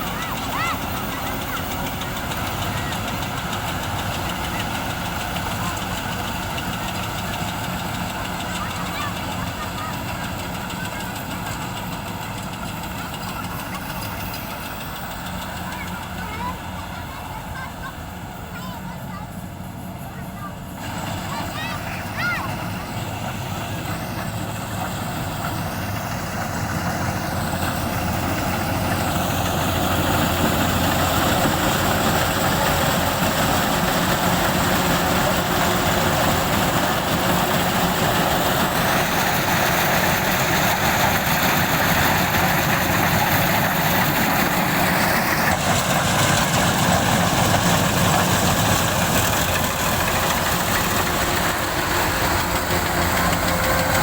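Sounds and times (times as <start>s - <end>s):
combine harvester engine running: 0.0s - 54.0s.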